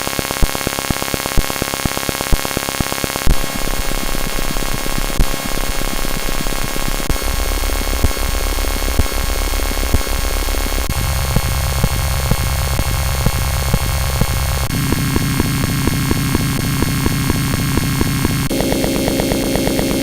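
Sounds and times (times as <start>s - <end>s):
harsh electronic buzz: 0.0s - 20.0s
scattered clicks: 4.1s - 20.0s.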